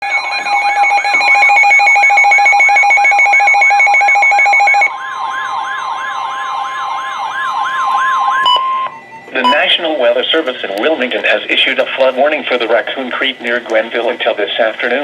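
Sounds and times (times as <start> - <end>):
electronic siren sweeping upward: 0.0 - 9.8
fast-pulsing electronic alarm tone: 0.0 - 10.1.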